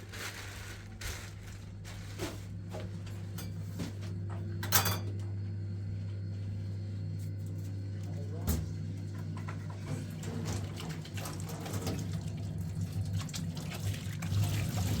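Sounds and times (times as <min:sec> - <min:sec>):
steady low hum: 0:00.1 - 0:10.3.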